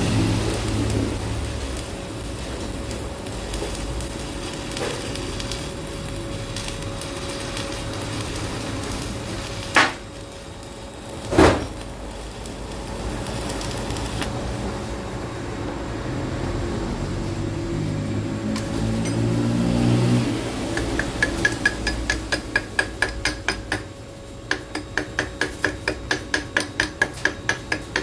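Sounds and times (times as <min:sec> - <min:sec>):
welding arc crackling: 0:00.0 - 0:28.0
sharp metallic knocks: 0:20.7 - 0:23.9, 0:24.5 - 0:28.0.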